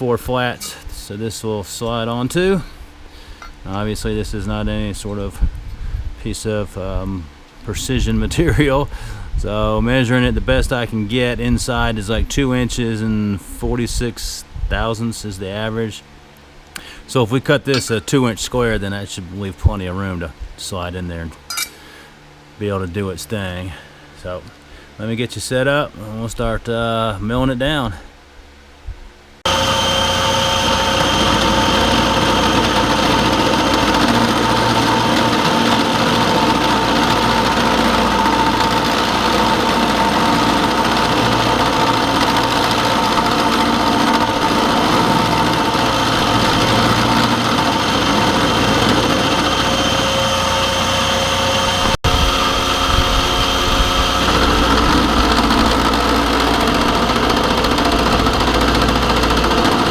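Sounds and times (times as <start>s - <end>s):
milling machine cutting steel: 29.5s - 59.9s.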